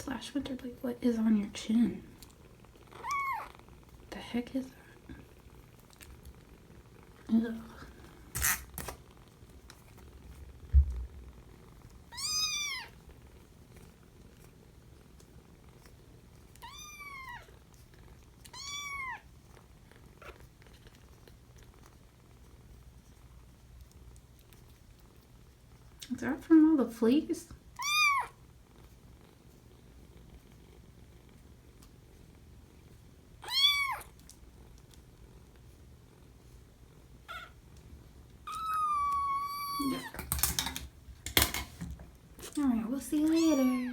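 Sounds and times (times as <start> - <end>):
cat purring: 0.0 - 41.2
kitten meowing: 3.0 - 3.5, 12.1 - 13.0, 16.6 - 17.5, 18.5 - 19.2, 27.8 - 28.4, 33.4 - 34.1, 37.3 - 37.5, 38.5 - 40.3, 43.2 - 43.9.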